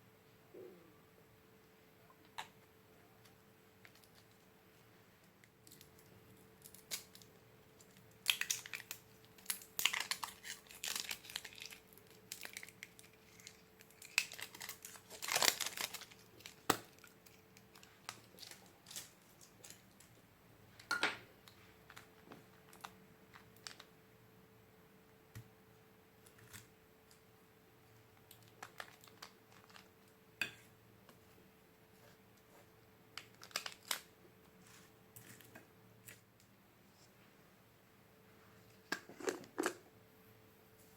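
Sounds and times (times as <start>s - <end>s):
faint steady hum: 0.0s - 40.9s
slime crackling and popping: 5.6s - 19.8s.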